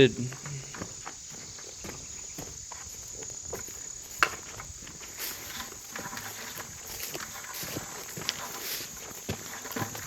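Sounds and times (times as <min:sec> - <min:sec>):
insects droning: 0:00.0 - 0:10.0
soft footfalls: 0:00.2 - 0:10.0
rustling: 0:04.1 - 0:10.0.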